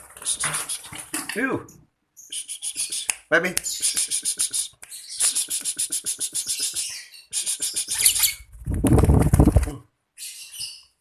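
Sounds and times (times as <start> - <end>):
lovebirds chirping: 2.2 - 8.5, 10.2 - 11.0.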